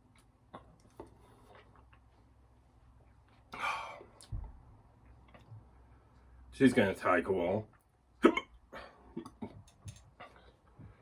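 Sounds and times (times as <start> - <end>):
man hiccuping: 8.2 - 8.6.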